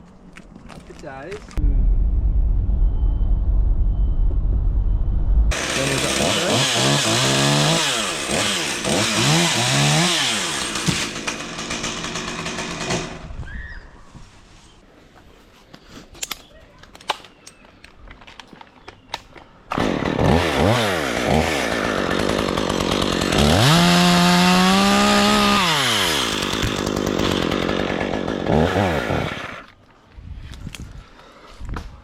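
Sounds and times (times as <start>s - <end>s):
two-stroke chainsaw revving: 5.5s - 13.2s, 19.8s - 29.7s.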